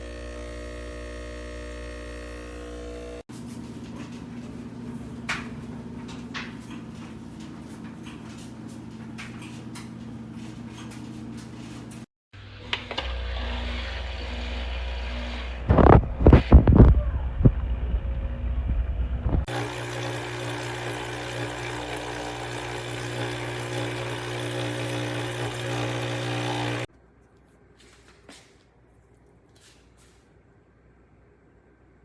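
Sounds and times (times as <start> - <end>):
espresso machine pump brewing: 0.0 - 16.4, 19.4 - 26.9.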